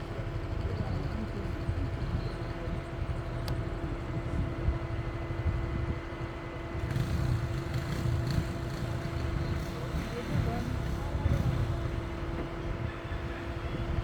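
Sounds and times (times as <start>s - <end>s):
motor vehicle running: 6.2s - 14.0s.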